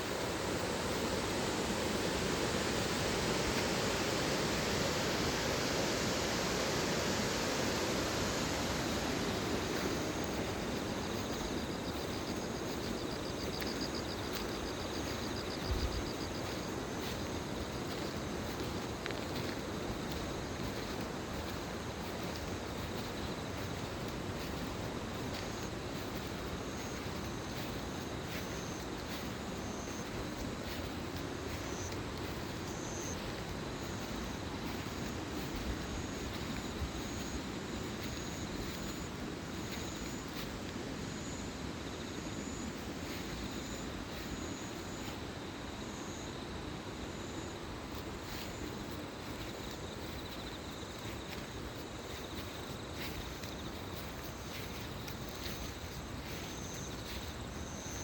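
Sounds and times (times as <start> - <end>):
stream rushing: 0.0 - 41.0, 47.4 - 58.0
insects chirping: 0.0 - 58.0
thin insect trill: 0.0 - 58.0.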